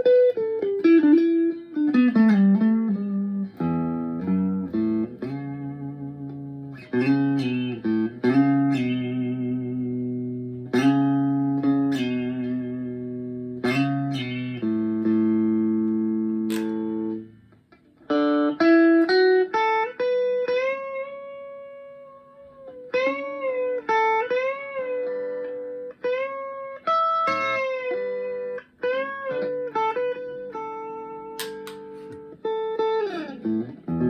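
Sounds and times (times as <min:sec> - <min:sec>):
electric guitar chord: 0:00.0 - 0:17.4
electric guitar lead line: 0:00.0 - 0:34.0.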